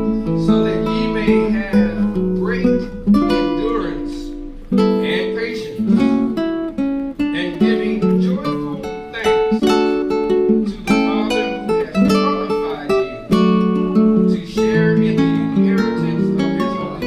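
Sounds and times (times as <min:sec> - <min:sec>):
acoustic guitar music: 0:00.0 - 0:17.0.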